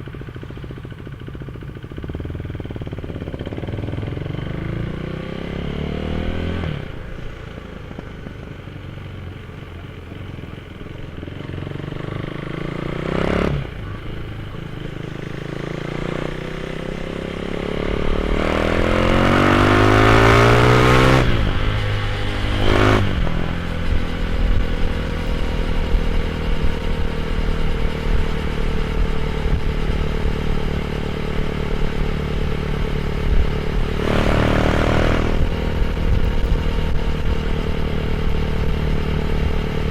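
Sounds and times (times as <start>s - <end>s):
motorcycle accelerating through gears: 0.0s - 39.9s.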